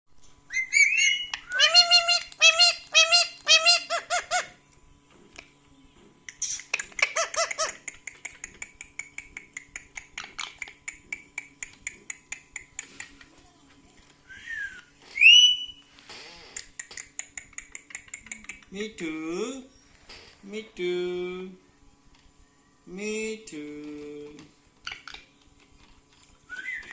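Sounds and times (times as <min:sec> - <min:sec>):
parrot whistling: 0:00.5 - 0:04.5, 0:14.3 - 0:15.8, 0:26.5 - 0:26.9
parrot chattering: 0:00.5 - 0:04.6, 0:06.3 - 0:13.2, 0:16.4 - 0:19.0
parrot mimicking laughter: 0:01.5 - 0:04.6, 0:06.7 - 0:09.2.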